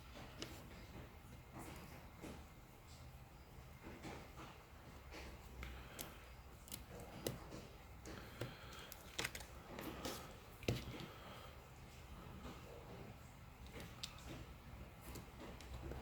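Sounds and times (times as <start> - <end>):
small tools clicking and tapping: 5.0 - 11.1.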